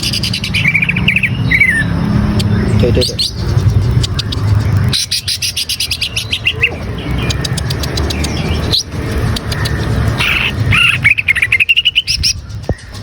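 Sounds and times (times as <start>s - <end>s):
bird singing: 0.0s - 13.0s
steady low rumble: 0.0s - 13.0s.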